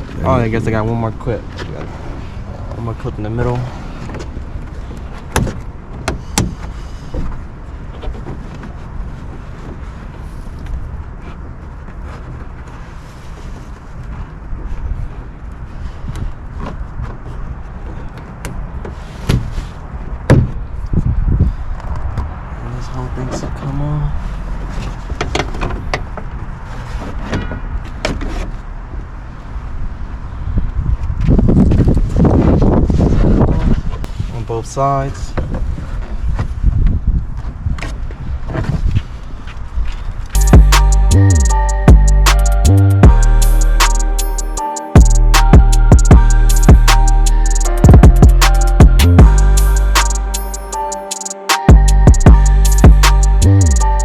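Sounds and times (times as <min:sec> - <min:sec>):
low rumble: 0:40.4 - 0:50.8, 0:51.7 - 0:54.0.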